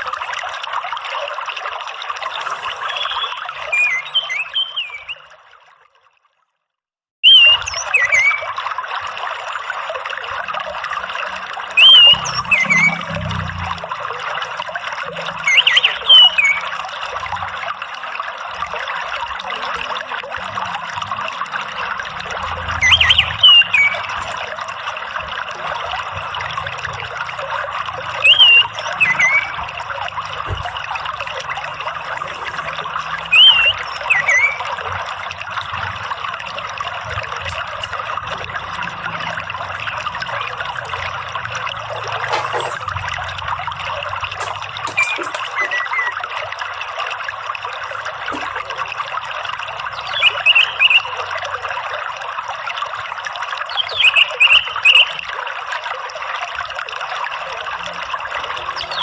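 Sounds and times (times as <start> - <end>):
water trickling: 0.0 - 59.0
bird whistling bending notes: 2.6 - 5.2, 7.2 - 8.5, 11.8 - 13.2, 15.4 - 16.8, 22.6 - 24.5, 28.2 - 29.8, 33.1 - 34.9, 44.8 - 46.3, 50.0 - 51.1, 53.7 - 55.2.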